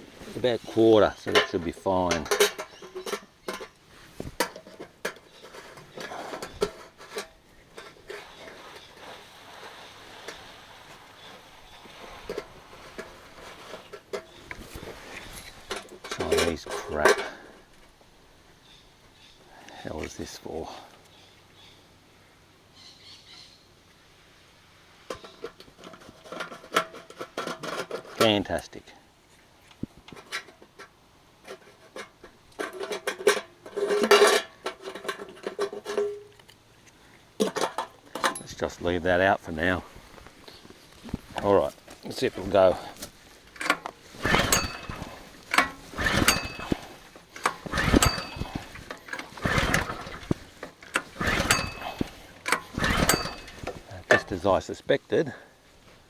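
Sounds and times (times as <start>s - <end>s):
metal parts clinking: 1.0s - 9.2s, 13.7s - 17.5s, 31.5s - 36.6s, 41.1s - 54.5s
hands clicking on fire pump: 40.0s - 54.4s
short metallic ring: 44.2s - 50.4s, 51.0s - 53.9s.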